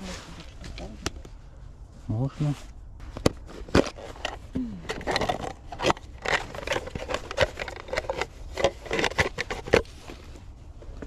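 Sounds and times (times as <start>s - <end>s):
gear clicking and scraping: 3.7s - 10.3s.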